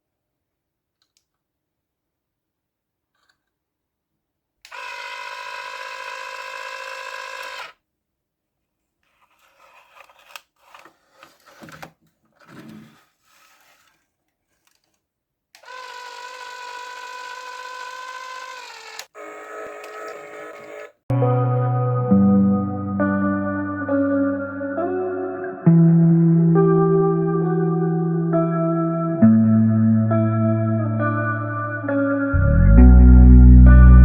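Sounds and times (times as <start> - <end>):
power tool motor whining: 4.7 - 7.8, 15.6 - 21.0.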